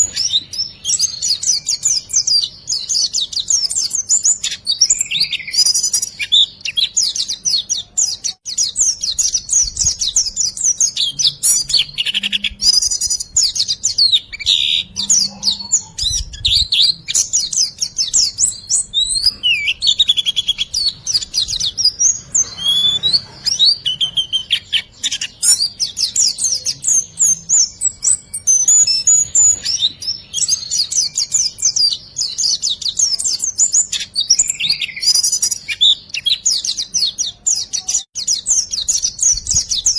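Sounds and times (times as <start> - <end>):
sandpipers whistling calls: 8.9 - 17.3, 18.2 - 25.6.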